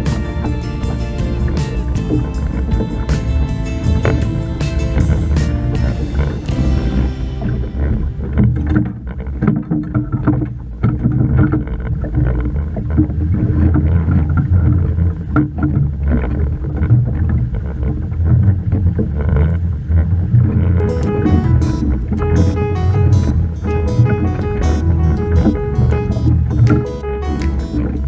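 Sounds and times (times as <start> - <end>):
boat engine low rumble: 0.0 - 28.0
knocks and clicks: 20.8 - 28.0.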